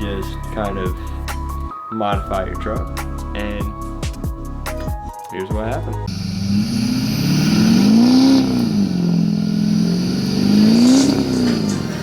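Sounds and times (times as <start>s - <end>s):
diesel engine revving: 6.1s - 12.0s.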